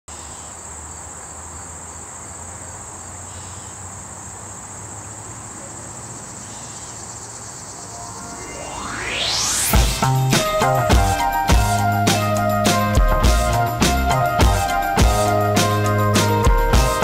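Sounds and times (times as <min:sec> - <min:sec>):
crickets chirping: 0:00.1 - 0:10.2
rising whoosh: 0:07.7 - 0:12.6
music: 0:07.8 - 0:17.0.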